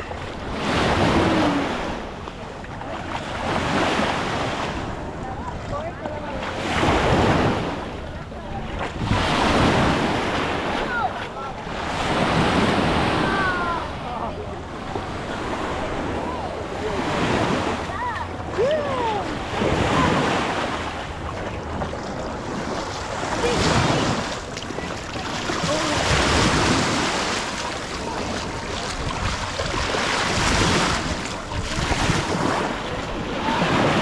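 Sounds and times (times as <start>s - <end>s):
wind buffeting the microphone: 0.0s - 11.2s, 14.5s - 34.0s
waves washing onto a beach: 0.0s - 34.0s
distant voices: 10.1s - 34.0s.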